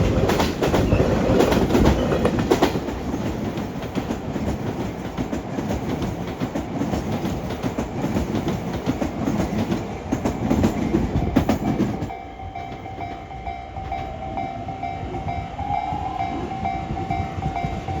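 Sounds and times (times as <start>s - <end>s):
train wheels clattering: 0.0s - 18.0s
level-crossing bell ringing: 11.6s - 18.0s.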